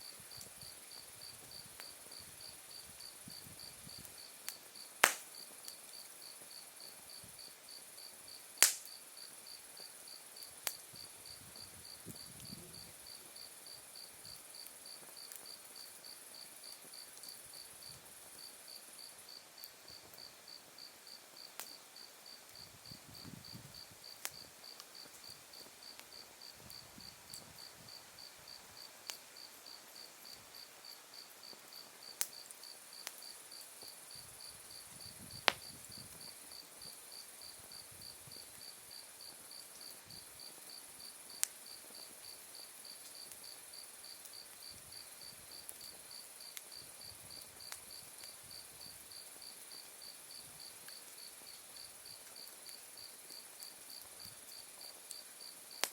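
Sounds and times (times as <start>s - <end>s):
wood fire crackling: 0.0s - 55.9s
burning wood popping: 5.0s - 5.4s, 8.6s - 9.0s, 35.2s - 36.4s.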